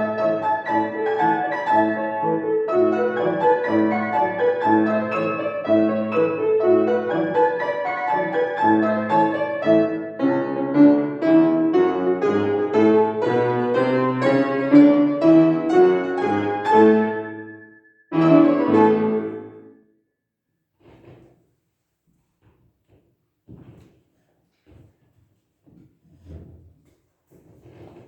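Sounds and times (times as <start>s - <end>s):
solo classical piano: 0.0s - 19.7s.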